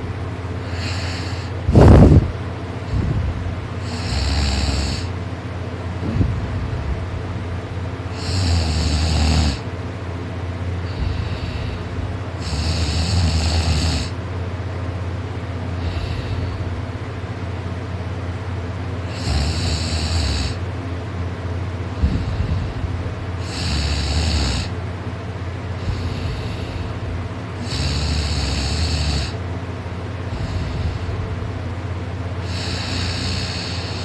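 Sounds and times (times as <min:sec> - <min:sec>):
person snoring loudly: 0:00.6 - 0:02.2, 0:03.8 - 0:05.2, 0:08.1 - 0:09.7, 0:10.8 - 0:14.2, 0:15.8 - 0:16.6, 0:19.1 - 0:20.6, 0:23.4 - 0:24.8, 0:25.8 - 0:27.0, 0:27.6 - 0:29.4, 0:30.3 - 0:31.2, 0:32.4 - 0:34.0
faint breaths: 0:10.8 - 0:13.2, 0:15.7 - 0:16.8, 0:21.9 - 0:23.0, 0:25.8 - 0:29.4, 0:30.2 - 0:31.5, 0:32.4 - 0:34.0.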